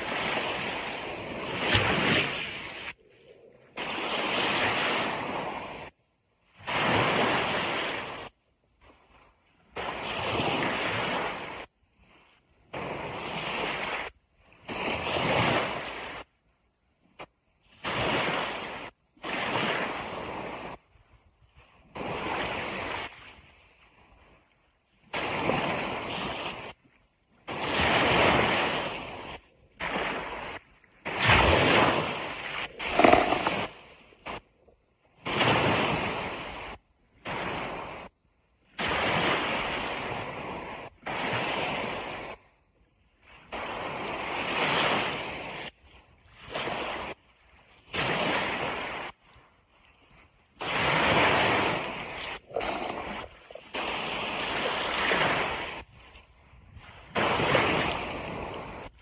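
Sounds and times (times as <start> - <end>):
ocean surf: 0.0 - 5.9, 25.1 - 38.1, 50.7 - 55.9.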